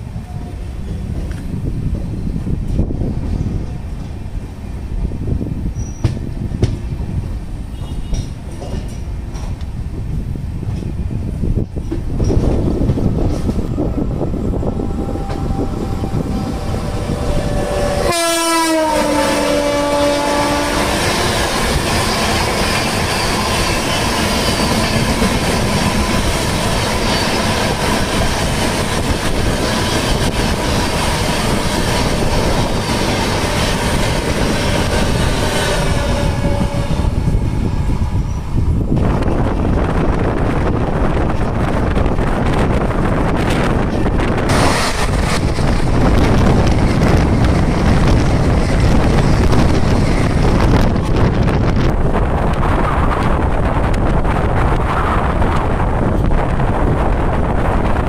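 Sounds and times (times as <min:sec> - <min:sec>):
rush of passing train: 0:00.0 - 0:58.0
train wheels clickety-clack: 0:05.8 - 0:07.1, 0:07.7 - 0:09.9, 0:10.6 - 0:13.8, 0:20.7 - 0:37.5, 0:41.1 - 0:58.0
train horn: 0:07.7 - 0:08.3, 0:14.3 - 0:21.6, 0:34.9 - 0:37.8.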